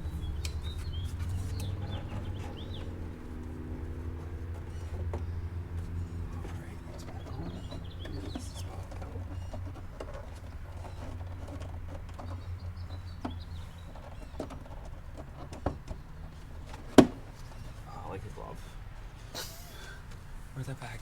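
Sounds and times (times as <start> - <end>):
plastic parts clicking and knocking: 6.9 - 17.4.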